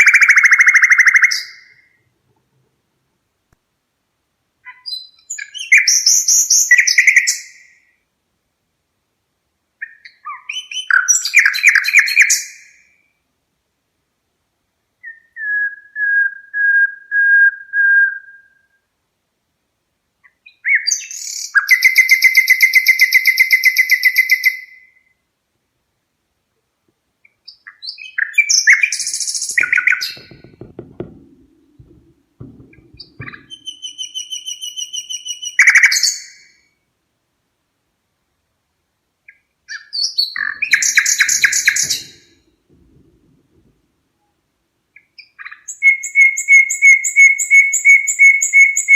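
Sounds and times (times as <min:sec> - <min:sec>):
low rough sound: 0:29.6 - 0:33.9.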